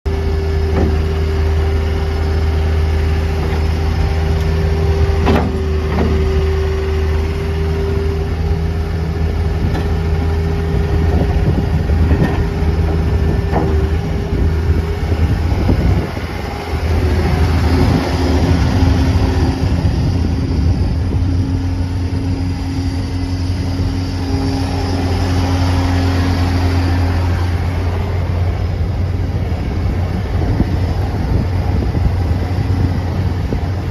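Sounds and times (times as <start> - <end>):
diesel engine running: 0.1 - 33.9
high steady whine: 0.1 - 33.9.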